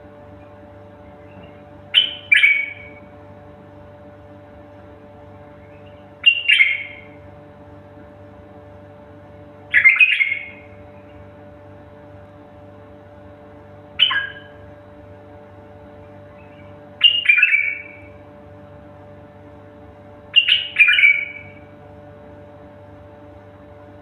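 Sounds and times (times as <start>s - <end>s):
low electrical hum: 0.0s - 24.0s
bird giving short calls: 2.0s - 3.0s, 5.8s - 7.1s, 9.7s - 10.7s, 14.0s - 14.6s, 16.4s - 18.1s, 20.4s - 21.6s.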